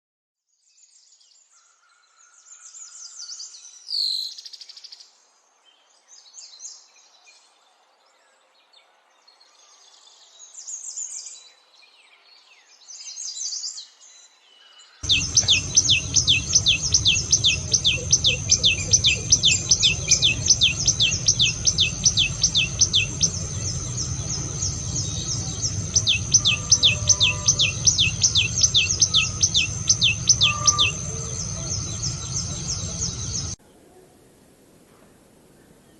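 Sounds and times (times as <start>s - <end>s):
songbirds chirping and singing: 0.7s - 33.6s
low rumble: 15.0s - 33.6s
rapid high trill: 15.0s - 33.6s
steady high-pitched tone: 15.0s - 33.6s.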